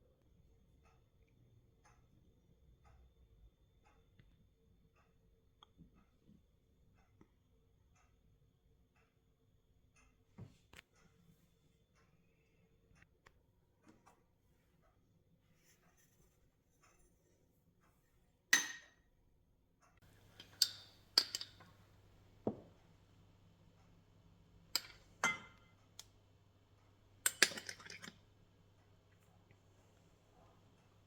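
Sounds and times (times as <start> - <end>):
dishes and utensils clinking: 20.2 - 21.8, 24.8 - 25.7, 27.3 - 28.2.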